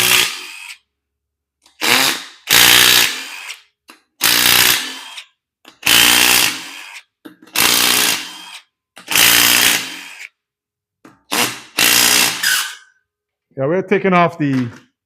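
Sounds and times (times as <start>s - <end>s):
impact wrench bursts: 1.8s - 10.3s, 11.3s - 12.8s.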